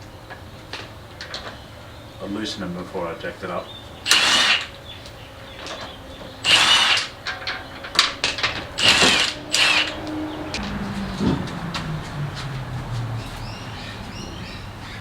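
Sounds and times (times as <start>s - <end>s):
power tool whirring: 4.0s - 4.8s, 5.6s - 13.8s.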